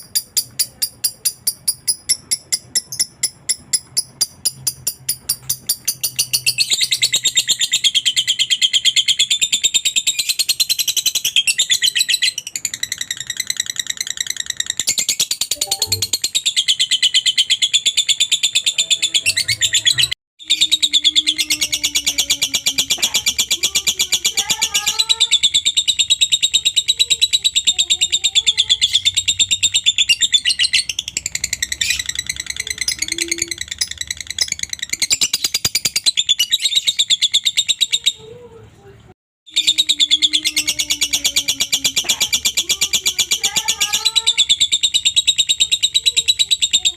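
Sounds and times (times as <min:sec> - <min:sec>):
lovebird chattering: 0:00.0 - 0:38.4, 0:39.5 - 0:46.9.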